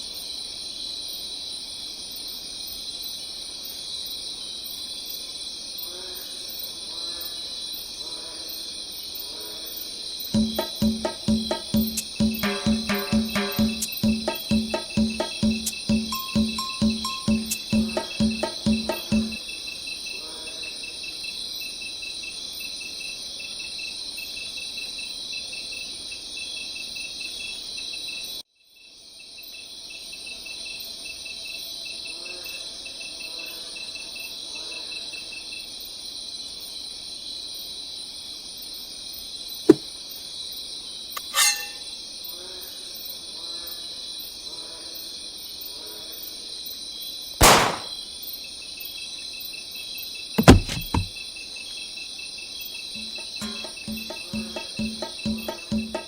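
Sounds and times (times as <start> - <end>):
crickets chirping: 0.0 - 56.0
sharp clicks or knocks: 10.4 - 19.4, 47.4 - 47.9, 50.4 - 51.1.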